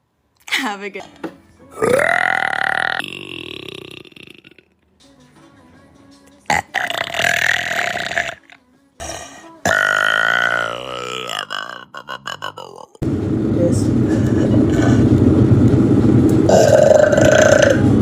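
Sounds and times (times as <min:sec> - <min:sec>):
woman burping: 0:01.7 - 0:04.8, 0:06.5 - 0:13.0, 0:16.5 - 0:17.9.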